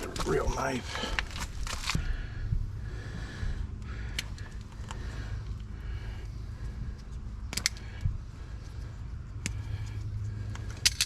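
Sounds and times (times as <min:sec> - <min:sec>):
low steady hum: 0:00.0 - 0:11.0
metallic clicks of hand tools: 0:07.5 - 0:07.8, 0:10.5 - 0:11.0.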